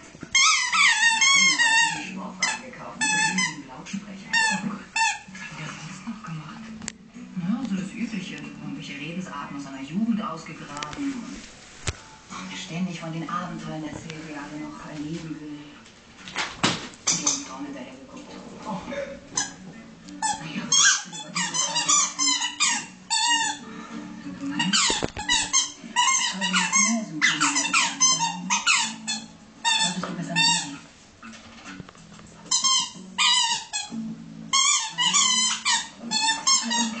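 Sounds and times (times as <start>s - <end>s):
squeaky toy squeaking: 0.3s - 3.6s, 4.3s - 5.3s, 17.1s - 17.5s, 20.2s - 23.6s, 24.7s - 30.7s, 32.5s - 37.0s.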